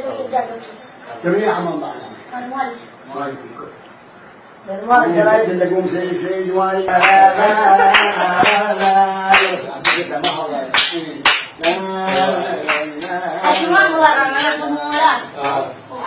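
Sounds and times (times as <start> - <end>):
hands clapping a beat: 6.9 - 15.6.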